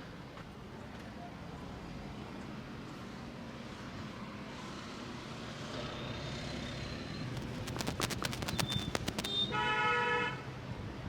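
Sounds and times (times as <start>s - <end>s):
vehicle engine rumbling: 7.2s - 9.4s.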